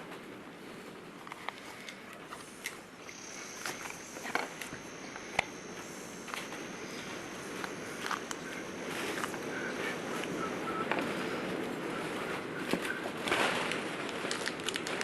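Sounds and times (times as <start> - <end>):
wind and rain on a roof: 0.0 - 15.0
faint high steady tone: 3.0 - 13.2.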